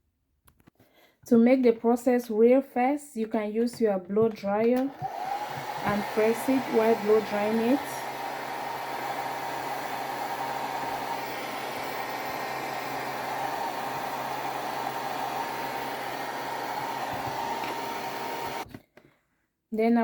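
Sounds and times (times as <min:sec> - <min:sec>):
blow dryer running: 0:04.8 - 0:18.7.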